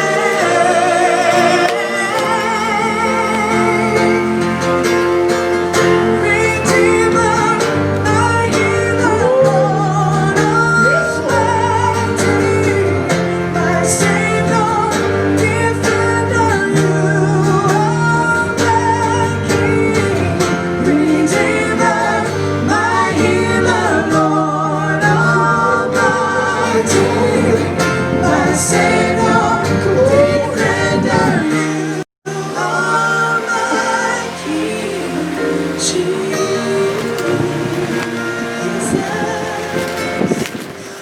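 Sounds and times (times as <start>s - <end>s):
bass guitar: 0.0s - 41.0s
congregation singing: 0.0s - 41.0s
guitar: 0.0s - 41.0s.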